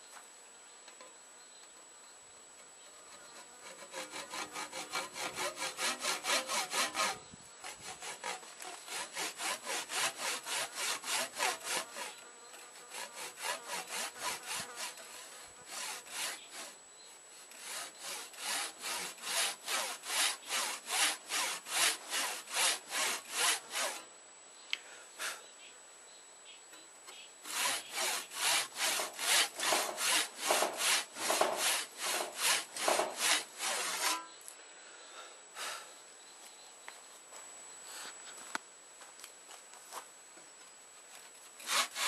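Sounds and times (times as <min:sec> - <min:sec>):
hand saw cutting: 0:03.1 - 0:24.0, 0:27.5 - 0:34.3, 0:41.6 - 0:42.0.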